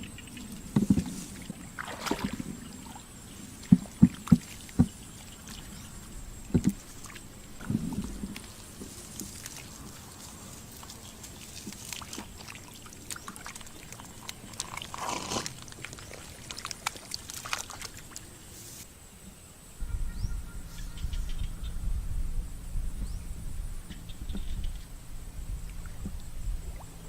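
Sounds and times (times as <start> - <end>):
shallow water splashing: 0.0 - 18.5
water drips: 10.7 - 18.3
low rumble: 19.8 - 27.0.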